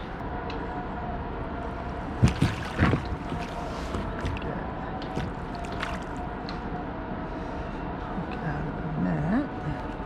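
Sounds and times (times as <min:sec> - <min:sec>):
faint hum: 0:00.0 - 0:10.0
water splashing: 0:02.2 - 0:06.3.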